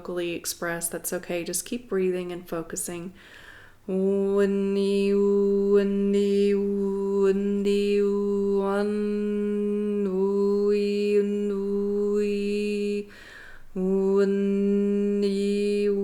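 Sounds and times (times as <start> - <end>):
quick breath: 3.2 - 3.8, 13.1 - 13.7
woman chanting a sustained tone: 3.8 - 16.0.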